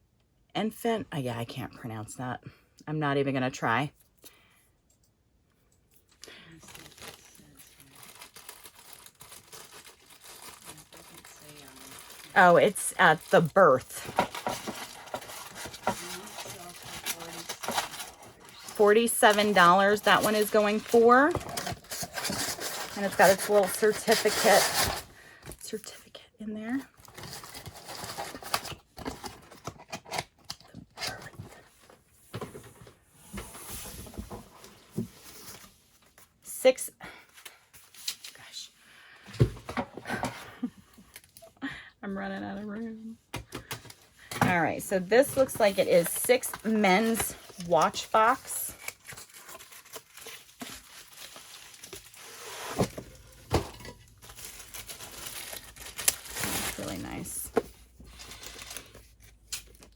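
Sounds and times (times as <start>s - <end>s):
rustling packaging: 6.0s - 25.6s, 26.9s - 36.4s, 43.5s - 59.9s.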